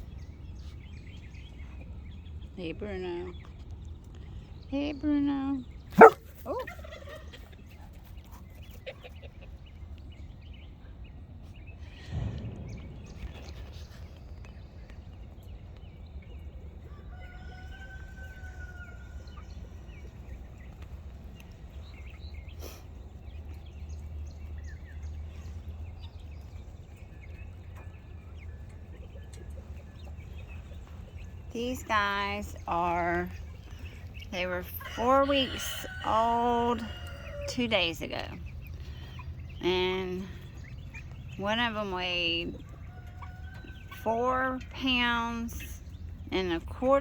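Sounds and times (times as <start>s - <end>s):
chickens peeping and calling: 5.7s - 12.3s, 13.1s - 47.0s
steady low rumble: 9.9s - 16.9s.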